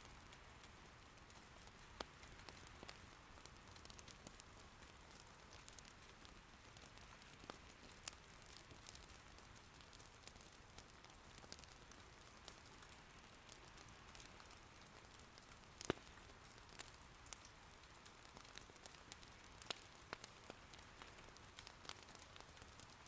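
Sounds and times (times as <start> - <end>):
firewood popping and crackling: 0.2 - 23.0.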